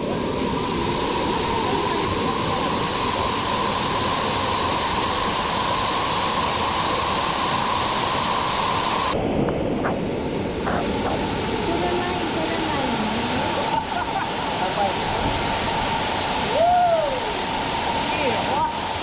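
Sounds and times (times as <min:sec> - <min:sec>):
waterfall rushing: 0:00.0 - 0:19.0
thin high hum: 0:08.0 - 0:16.4.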